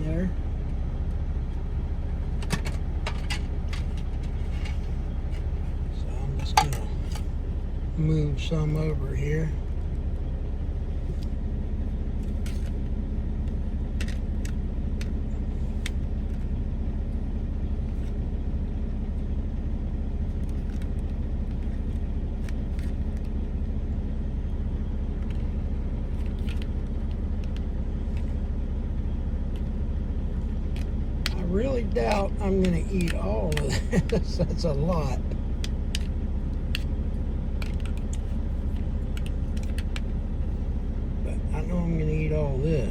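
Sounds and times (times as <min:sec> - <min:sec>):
truck engine idling: 0:00.0 - 0:42.9
food containers clicking and scraping: 0:02.3 - 0:05.8, 0:37.6 - 0:40.0.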